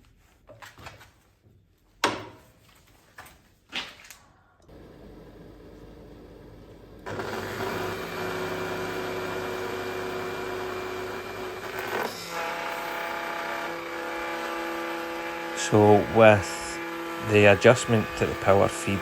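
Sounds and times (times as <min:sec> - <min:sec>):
router cutting wood: 0:04.7 - 0:19.0.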